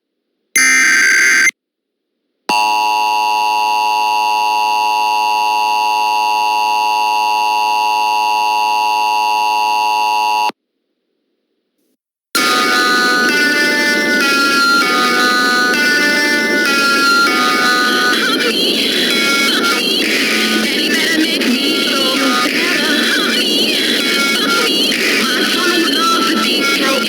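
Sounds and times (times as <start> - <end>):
two-tone alert signal: 0.6 - 1.5
buzzy chirping data burst: 12.4 - 27.0
music: 12.4 - 27.0.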